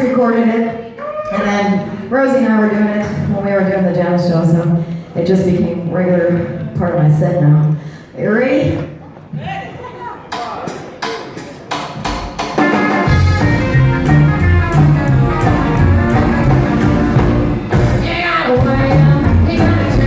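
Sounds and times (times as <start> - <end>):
rockabilly band playing: 10.2 - 20.0
drum hits: 10.3 - 20.0
steady bass line: 13.1 - 20.0.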